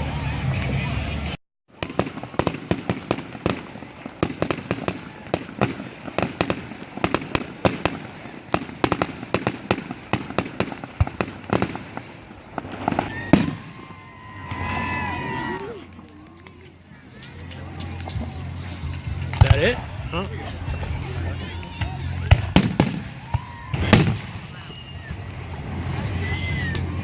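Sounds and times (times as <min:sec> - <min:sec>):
fireworks crackling pops: 0:00.4 - 0:27.0
loud firework bang: 0:12.6 - 0:15.6, 0:21.7 - 0:25.1.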